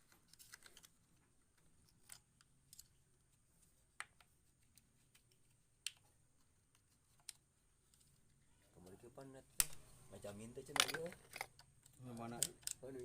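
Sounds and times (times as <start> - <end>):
tools clicking on metal parts: 10.7 - 12.9.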